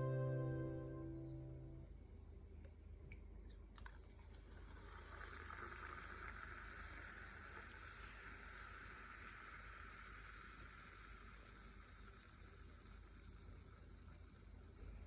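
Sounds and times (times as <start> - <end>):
background music: 0.0 - 1.8
liquid fizzing hiss: 4.2 - 15.0.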